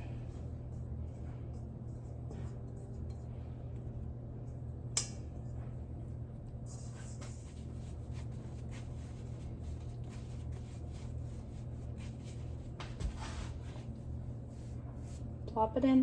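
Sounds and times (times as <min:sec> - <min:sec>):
hands shaping bread dough: 0:00.0 - 0:15.5
steady low hum: 0:00.0 - 0:16.0.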